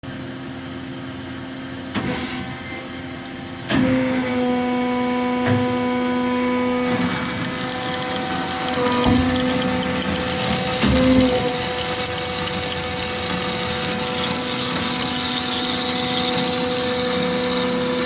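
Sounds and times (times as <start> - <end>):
bandsaw machine hum: 2.4 - 18.0
hiss: 6.8 - 18.0
machine clunk: 8.8 - 12.0.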